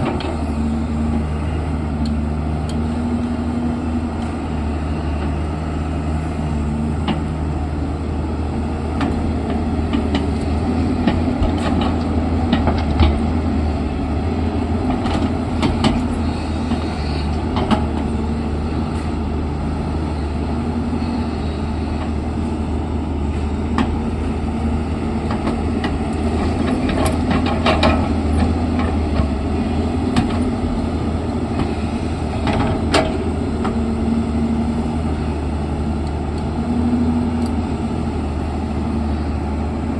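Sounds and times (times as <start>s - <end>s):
diesel engine running: 0.0s - 39.9s
clanks and knocks: 26.6s - 29.3s.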